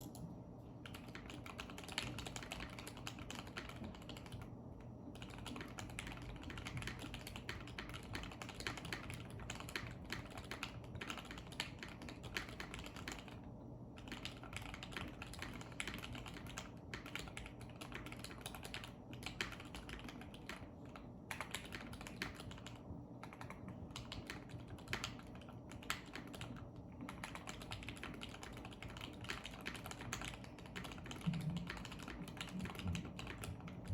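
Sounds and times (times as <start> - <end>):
fast typing on mechanical keyboard: 0.8 - 4.5, 5.1 - 33.9.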